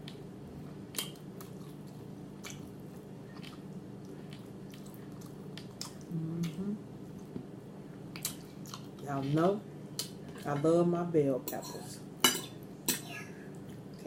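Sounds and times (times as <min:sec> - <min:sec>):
person chewing food: 0:00.0 - 0:09.0.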